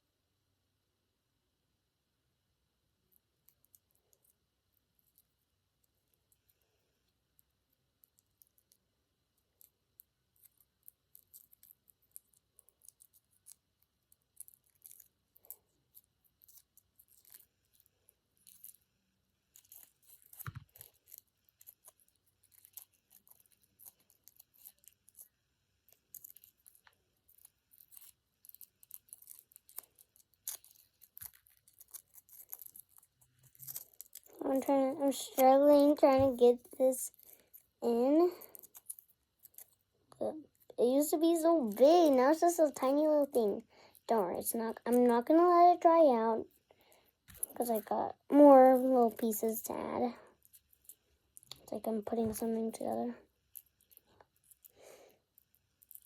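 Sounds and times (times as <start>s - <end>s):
aluminium foil crinkling: 10.4s - 18.8s, 19.5s - 39.8s.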